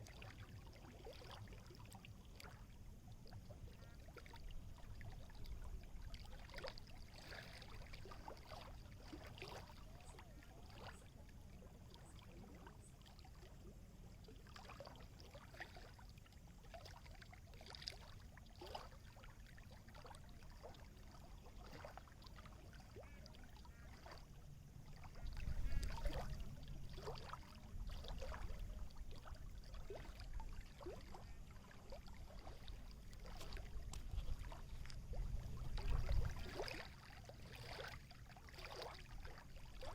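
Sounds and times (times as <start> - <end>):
small waves lapping and splashing: 0.0 - 39.9
water gurgles: 0.0 - 39.9.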